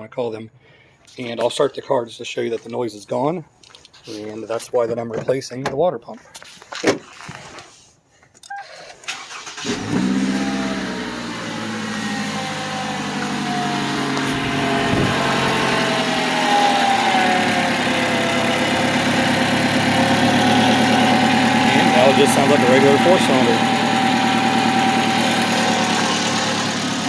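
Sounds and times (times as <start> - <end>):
car engine cranking and idling: 9.1 - 27.0.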